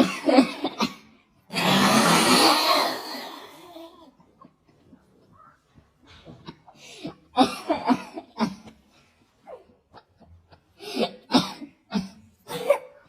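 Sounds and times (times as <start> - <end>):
person making cough-like noises: 0.0 - 3.6, 6.1 - 8.8, 10.8 - 13.0.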